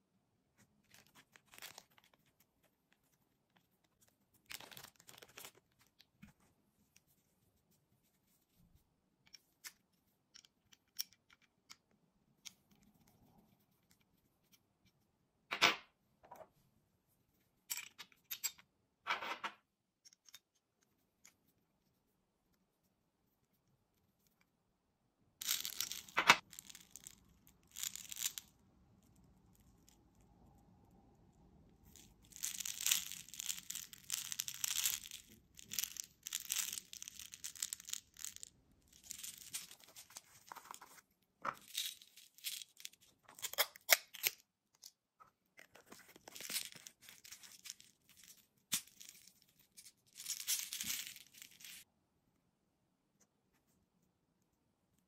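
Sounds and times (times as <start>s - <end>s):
rustling and scraping handling noises: 0.6s - 11.6s, 31.8s - 43.9s, 44.8s - 51.8s.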